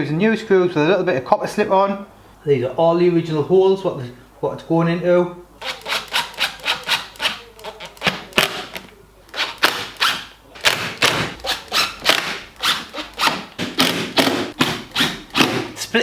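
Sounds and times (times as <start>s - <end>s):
screws being driven: 5.6s - 15.8s.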